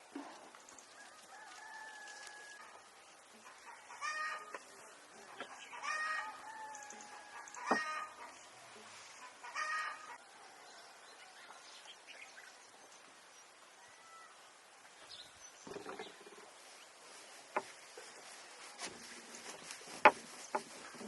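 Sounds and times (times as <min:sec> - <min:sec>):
rooster crowing: 0:01.0 - 0:02.8, 0:05.8 - 0:08.2
chickens calling: 0:01.0 - 0:08.5, 0:09.2 - 0:10.2.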